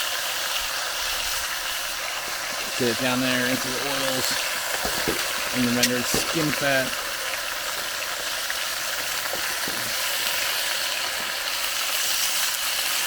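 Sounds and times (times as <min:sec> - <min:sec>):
chicken sizzling in a pan: 0:00.0 - 0:13.0
faint knocks in a pan: 0:04.1 - 0:07.0, 0:09.0 - 0:10.0.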